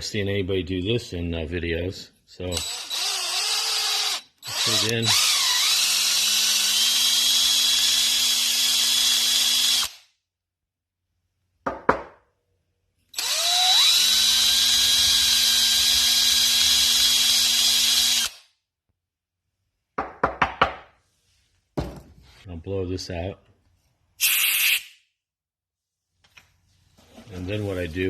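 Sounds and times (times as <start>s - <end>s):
electric drill with wire brush: 2.6s - 10.0s, 13.2s - 18.4s.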